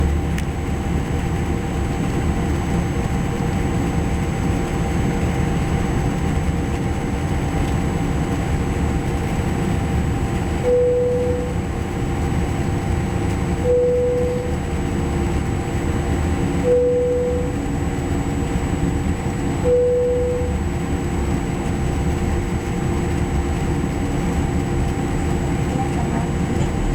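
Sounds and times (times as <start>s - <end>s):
aircraft cabin engine and airflow noise: 0.0s - 26.9s
short cabin tones: 10.7s - 11.7s, 13.3s - 14.8s, 25.7s - 26.9s.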